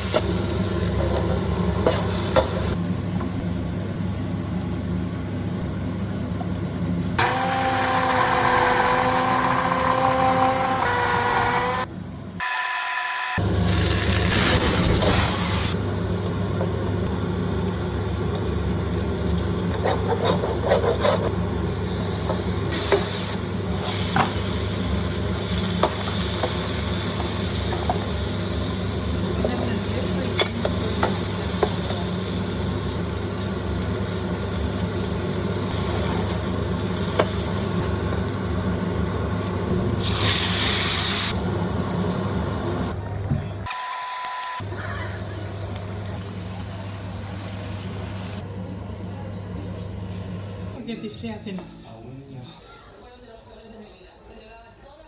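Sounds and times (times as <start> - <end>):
food sizzling in a pan: 0.0 - 2.9, 13.4 - 15.8, 17.1 - 42.9
utensil scraping a pan: 19.7 - 21.4.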